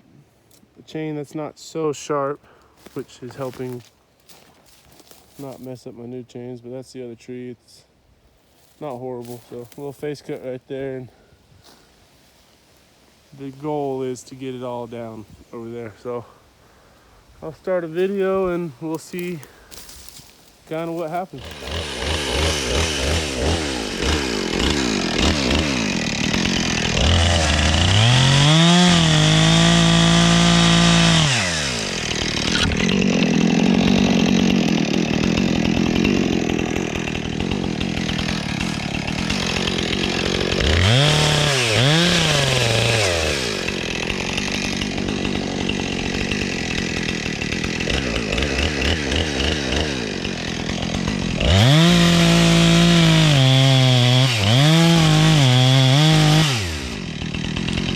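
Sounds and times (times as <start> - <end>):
chainsaw cutting into tree trunk: 2.8 - 5.7, 18.0 - 57.9
chainsaw idling and revving: 2.8 - 5.7, 8.6 - 11.8, 17.6 - 57.9.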